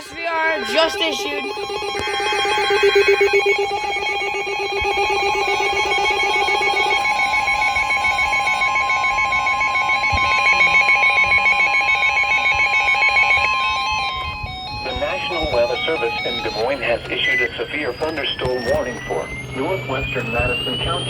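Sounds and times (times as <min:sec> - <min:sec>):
electronic alarm pulsing warble: 0:00.0 - 0:21.0
second steady tone: 0:00.0 - 0:21.0.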